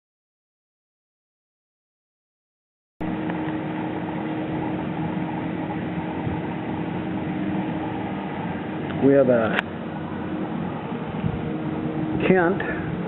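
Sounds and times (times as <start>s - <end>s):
steady mechanical hum: 3.0s - 13.0s.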